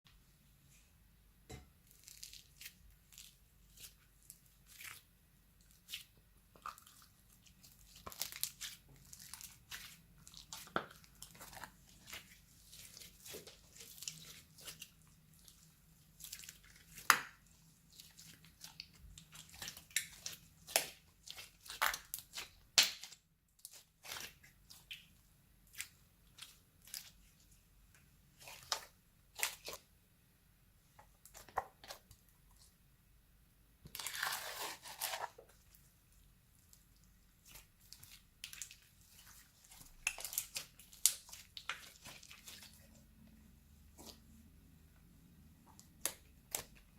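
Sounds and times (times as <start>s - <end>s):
slime squished by hand: 37.4s - 42.9s.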